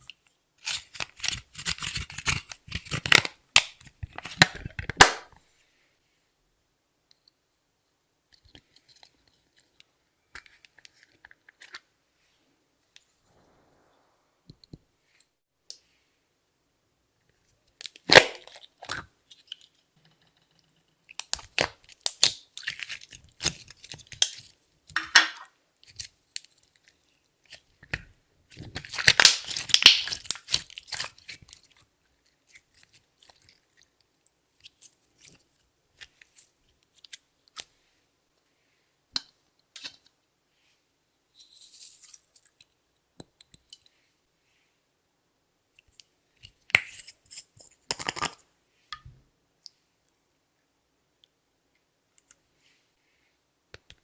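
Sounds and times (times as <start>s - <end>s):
slime crackling and popping: 21.2s - 24.4s, 28.7s - 31.6s.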